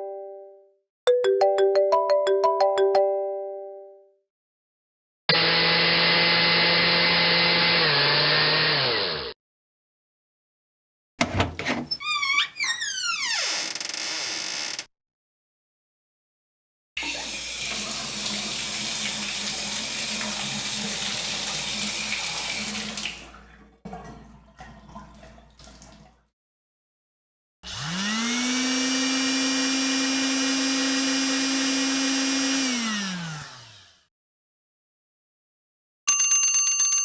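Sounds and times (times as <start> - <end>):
hair dryer motor whine: 5.3 - 9.4, 27.7 - 34.0
shower running: 17.0 - 26.2.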